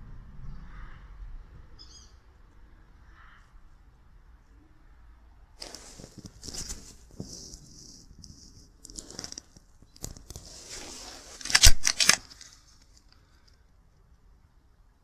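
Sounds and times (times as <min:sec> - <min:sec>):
rustling and scuffling: 0:05.6 - 0:13.0
loud sharp cracks: 0:11.4 - 0:12.5
scattered clicks: 0:11.4 - 0:13.6.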